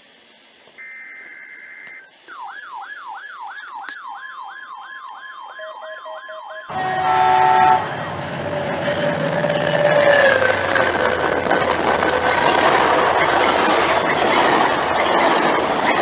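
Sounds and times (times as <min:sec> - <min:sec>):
electronic siren yelping: 0:02.3 - 0:16.0
low rumble with held tones: 0:06.7 - 0:16.0.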